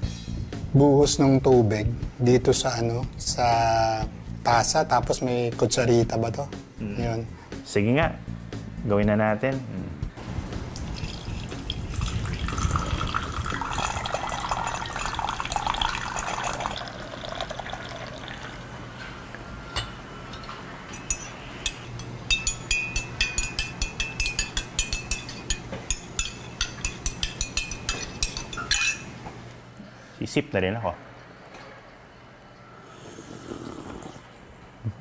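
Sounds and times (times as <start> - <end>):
water poured into ceramic cup: 10.8 - 18.6
teaspoon clinking against cup: 20.4 - 29.1.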